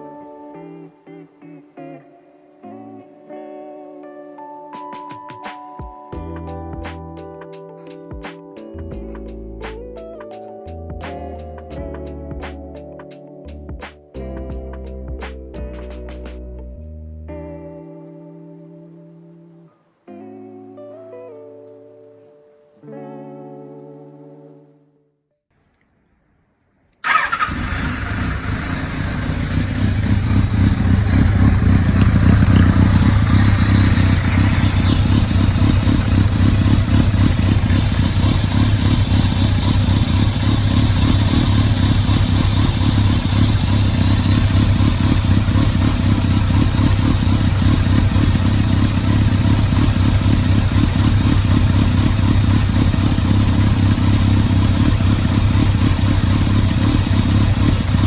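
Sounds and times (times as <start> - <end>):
motorcycle engine running: 27.0 - 58.0.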